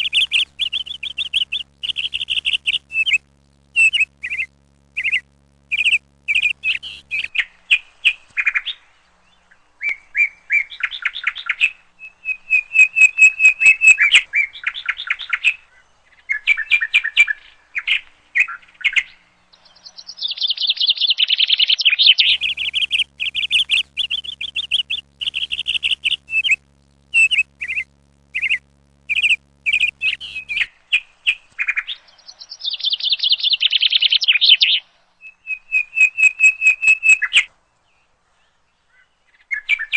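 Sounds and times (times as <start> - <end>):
bird singing chirps and trills: 0.0 - 3.2, 3.8 - 7.4, 19.6 - 26.6, 27.2 - 30.7, 31.7 - 37.4.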